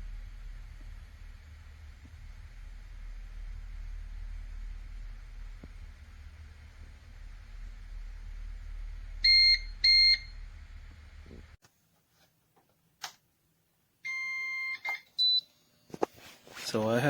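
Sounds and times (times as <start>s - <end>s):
low hum: 0.0s - 11.6s
longer lower beep: 8.8s - 10.8s
click: 13.0s - 13.2s.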